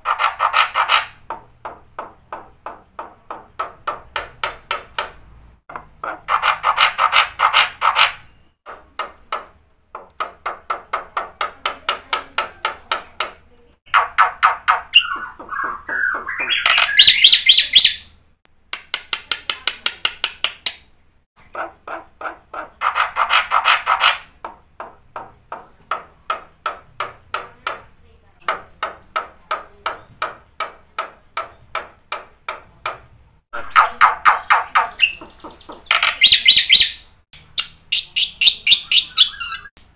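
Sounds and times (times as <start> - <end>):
bird chattering song: 13.9 - 18.2, 33.6 - 39.8
bird whistling: 14.8 - 18.1, 33.6 - 37.0, 37.6 - 39.7.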